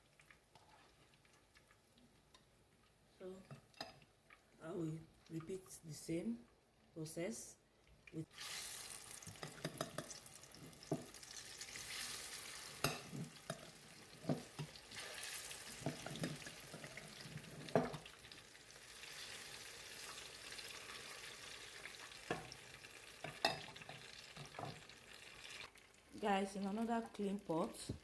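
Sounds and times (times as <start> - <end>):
plantain sizzling in hot oil: 8.2 - 26.2.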